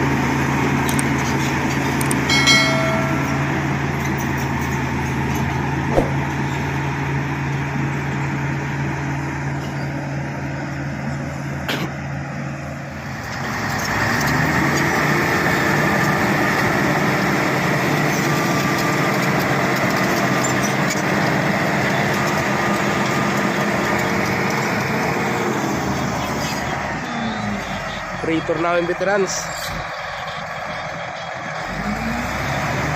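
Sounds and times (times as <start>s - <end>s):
bulldozer diesel engine revving: 13.0s - 28.5s, 29.3s - 32.9s.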